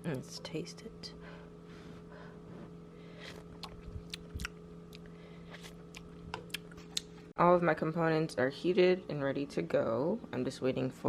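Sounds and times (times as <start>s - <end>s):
steady low hum: 0.0s - 11.0s
mouth clicks and smacks: 3.5s - 7.2s.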